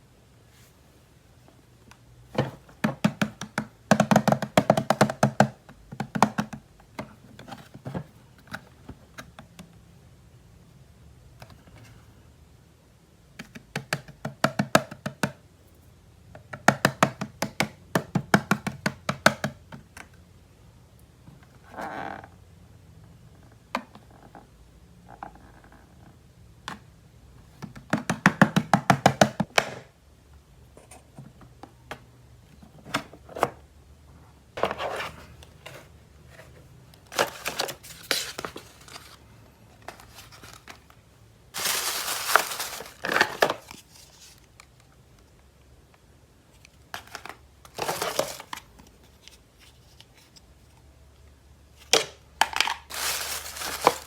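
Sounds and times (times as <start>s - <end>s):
plastic packaging crinkling and tearing: 41.6s - 44.4s, 52.6s - 54.0s.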